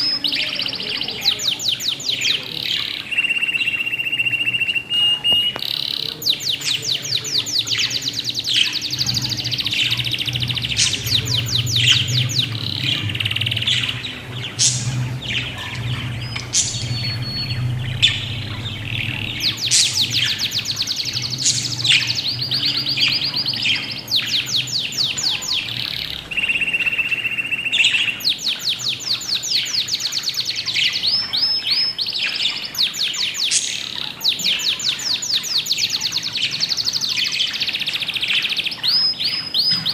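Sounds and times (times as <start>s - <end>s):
low hum: 0.0s - 29.4s
budgies chirping and trilling: 0.0s - 39.9s.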